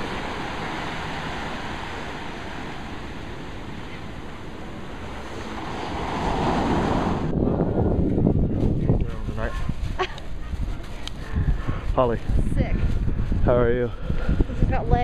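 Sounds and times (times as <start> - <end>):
ocean surf washing up beach: 0.0 - 7.6.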